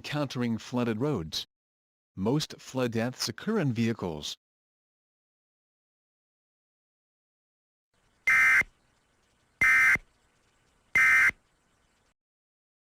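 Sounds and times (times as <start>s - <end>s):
digital data tones: 8.3s - 8.7s, 9.6s - 11.4s.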